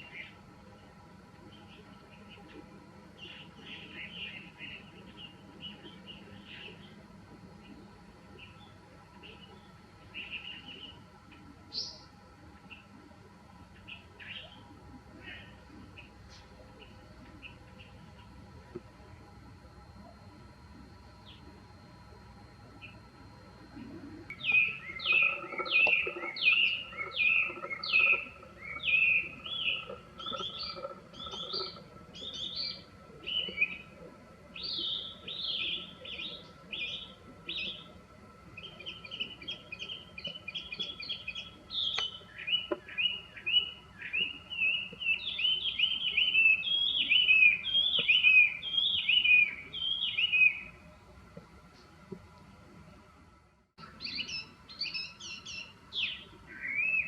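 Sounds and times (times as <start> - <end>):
bird singing whistled phrases: 41.8 - 50.7, 54.0 - 57.0.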